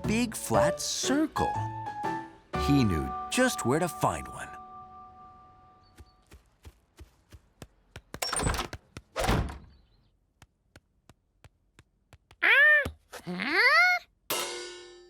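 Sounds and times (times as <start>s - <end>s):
cartoon monkey calls: 12.4s - 14.1s.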